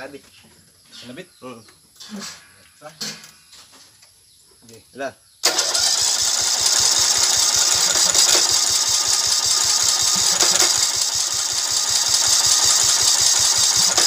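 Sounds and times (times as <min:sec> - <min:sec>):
mower engine running: 0:05.4 - 0:14.0.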